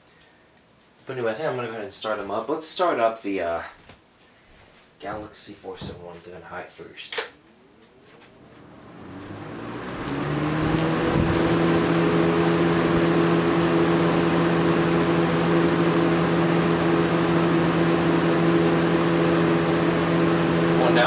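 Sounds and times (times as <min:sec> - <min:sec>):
box fan running: 0:07.1 - 0:21.0.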